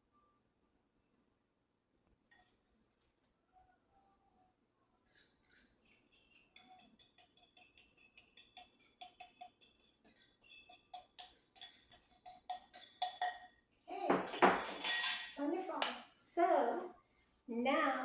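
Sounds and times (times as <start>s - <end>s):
utensils clinking against dishes: 5.0s - 15.5s.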